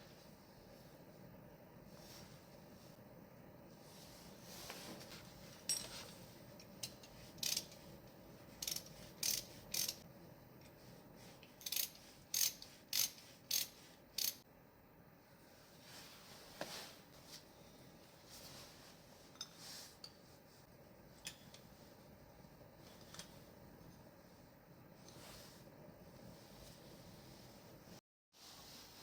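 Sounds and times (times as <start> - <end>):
metal parts and tools clinking: 5.7 - 7.8.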